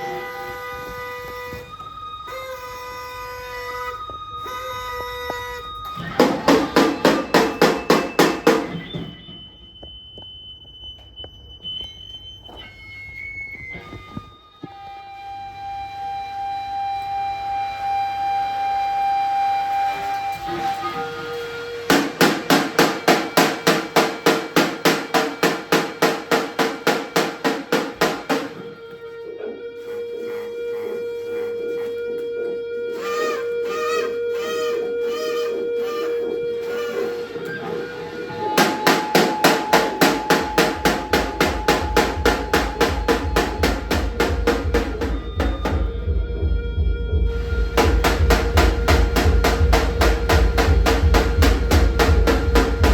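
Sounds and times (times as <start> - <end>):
rapid sharp knocks: 6.2 - 8.8, 21.9 - 28.6, 38.6 - 46.0, 47.8 - 52.9
rapid percussive strikes: 6.2 - 8.9, 21.8 - 28.7, 38.6 - 46.3, 47.2 - 52.9.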